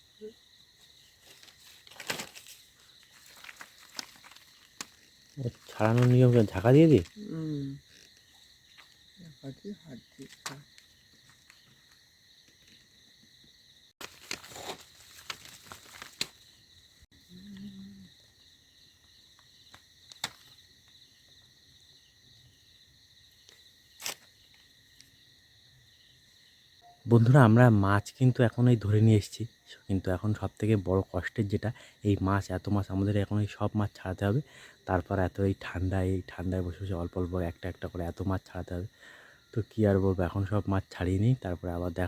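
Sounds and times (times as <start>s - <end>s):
night insects trilling: 0.0s - 42.0s
net rustling and clicking: 1.2s - 6.3s, 14.0s - 16.5s, 19.7s - 20.6s, 24.0s - 24.3s.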